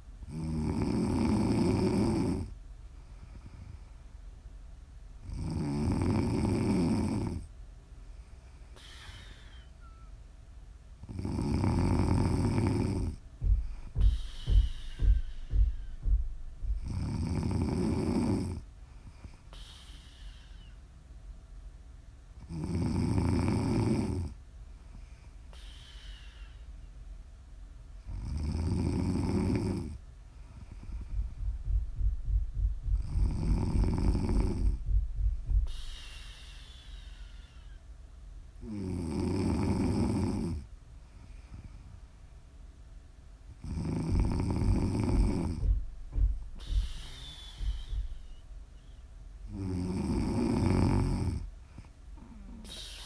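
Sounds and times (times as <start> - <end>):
woman snoring: 0.3 - 2.5, 5.3 - 7.5, 11.1 - 13.2, 16.8 - 18.6, 22.4 - 24.4, 28.1 - 30.0, 33.0 - 34.8, 38.6 - 40.6, 43.6 - 45.6, 49.5 - 51.5, 52.2 - 53.0.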